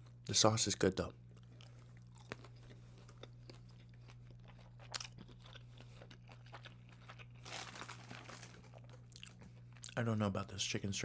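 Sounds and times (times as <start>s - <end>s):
crunchy chewing: 1.4s - 10.0s.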